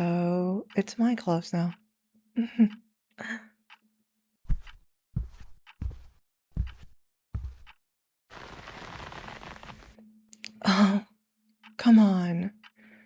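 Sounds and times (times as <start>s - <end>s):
footsteps: 4.5s - 10.0s
clothes rustling: 8.3s - 10.0s.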